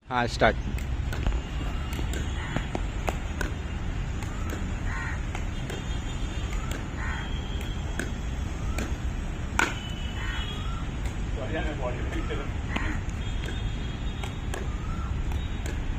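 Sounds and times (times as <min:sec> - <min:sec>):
bird calling: 0:00.5 - 0:15.9
paddles striking plastic ball: 0:00.7 - 0:09.9, 0:11.0 - 0:15.9.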